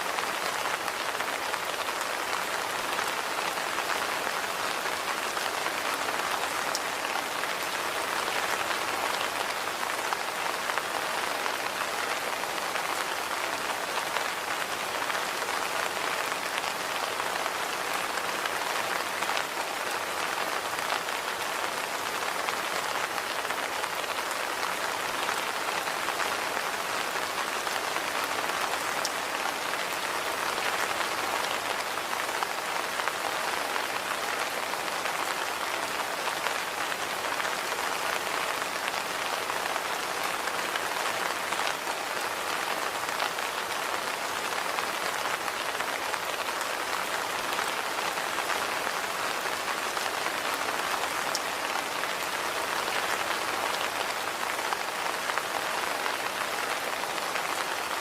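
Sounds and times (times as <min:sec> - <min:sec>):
rain on hard surfaces: 0:00.0 - 0:58.0.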